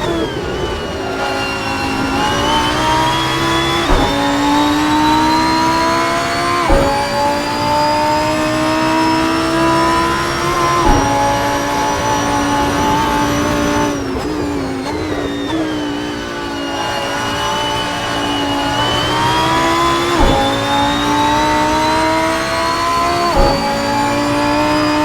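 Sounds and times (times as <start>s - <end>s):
sports car engine revving: 0.0s - 14.2s, 16.1s - 25.0s
gear shift crack: 0.0s - 14.4s, 17.1s - 25.0s.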